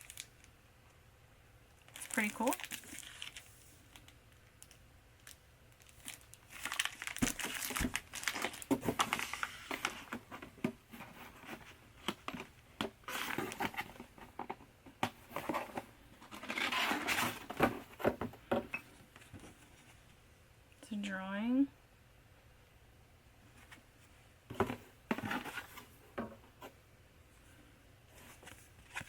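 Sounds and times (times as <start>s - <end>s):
wrapping crinkling and rustling: 0.0s - 0.5s, 1.8s - 18.4s.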